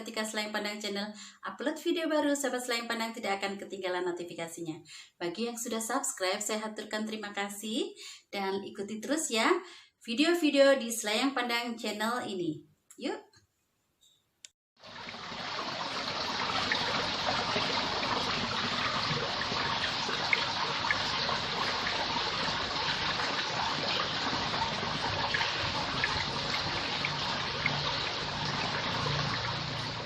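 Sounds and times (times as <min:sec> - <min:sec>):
running water: 0:14.8 - 0:30.0.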